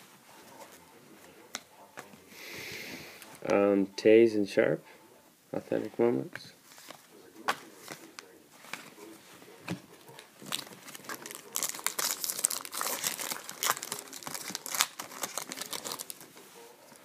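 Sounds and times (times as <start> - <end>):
wrapper tearing and crinkling: 10.4 - 16.3.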